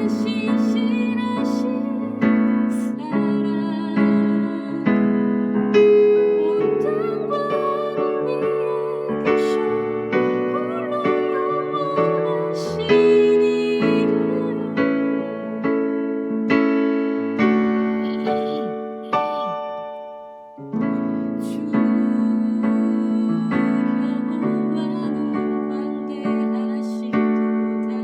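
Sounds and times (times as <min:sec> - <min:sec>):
piano playing hymn chords: 0:00.0 - 0:28.0.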